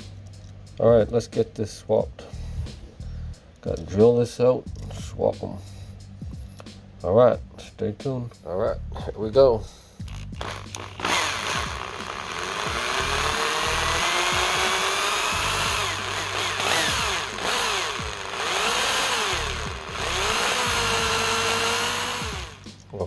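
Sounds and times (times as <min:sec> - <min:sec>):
electric drill whining: 0:10.0 - 0:22.8.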